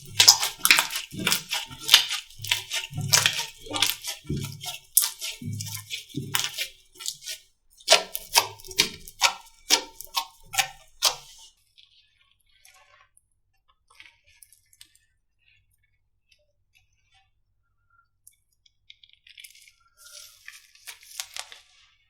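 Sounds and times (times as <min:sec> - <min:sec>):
slime squeezed by hand: 0:00.0 - 0:11.5.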